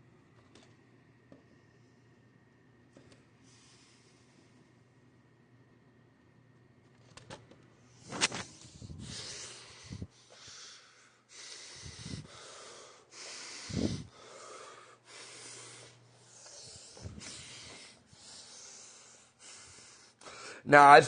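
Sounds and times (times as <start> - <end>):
person breathing: 8.6 - 20.7.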